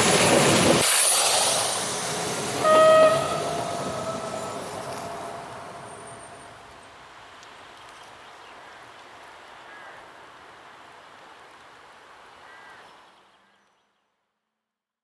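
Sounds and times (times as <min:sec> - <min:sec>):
train rumbling: 0:00.0 - 0:07.4.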